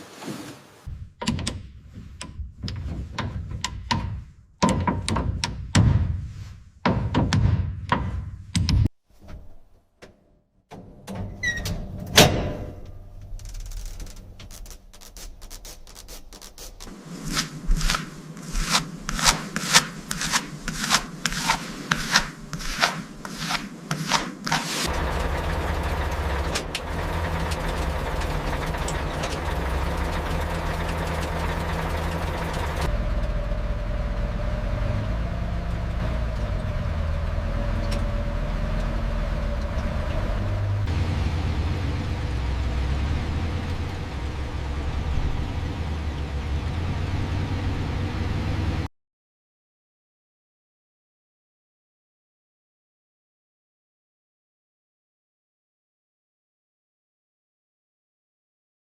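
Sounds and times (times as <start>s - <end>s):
rhythmic scraping strokes: 14.5s - 25.5s
steady low engine noise: 24.9s - 48.8s.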